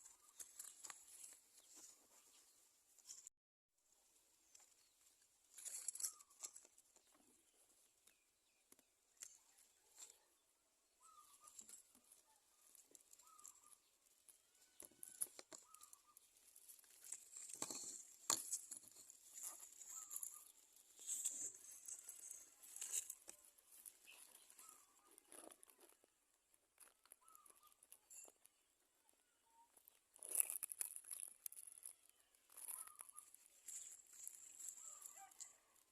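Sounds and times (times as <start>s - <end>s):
soft short bird chirps: 5.9s - 6.6s, 11.0s - 13.9s, 14.5s - 16.3s, 19.8s - 20.6s, 27.2s - 28.4s, 32.7s - 35.8s
rustling of nest material: 11.0s - 26.2s, 29.8s - 35.9s.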